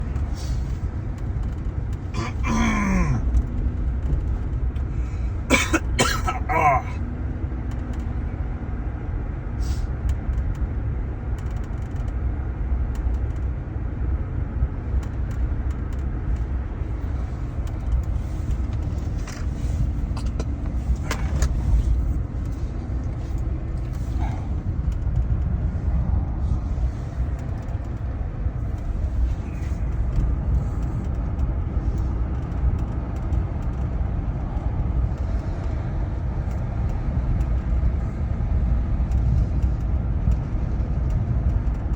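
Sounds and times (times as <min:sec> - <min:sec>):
motor vehicle low rumble: 0:00.0 - 0:41.9.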